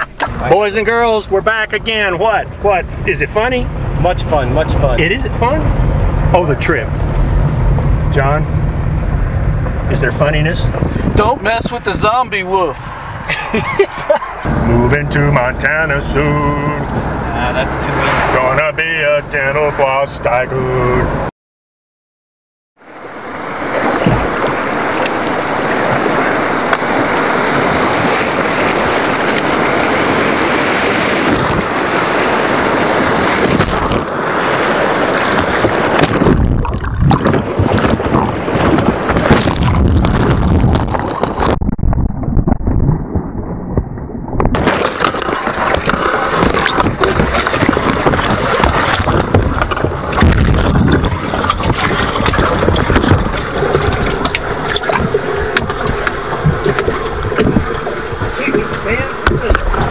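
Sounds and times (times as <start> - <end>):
whitewater rushing and splashing: 11.1 - 20.0, 22.8 - 41.6, 44.5 - 59.9.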